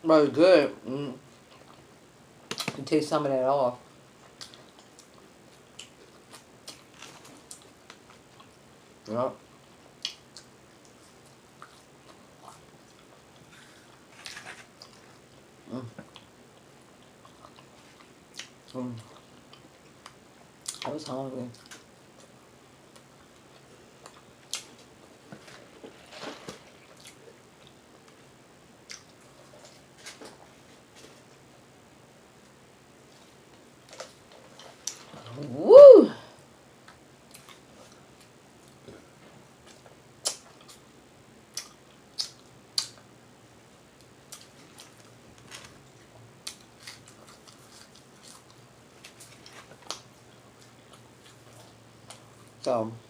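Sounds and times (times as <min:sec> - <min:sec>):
person chewing food: 0:01.3 - 0:01.9, 0:04.2 - 0:08.6, 0:09.6 - 0:20.8, 0:21.5 - 0:31.4, 0:32.4 - 0:35.4, 0:36.8 - 0:40.9, 0:41.5 - 0:43.1, 0:44.0 - 0:52.6.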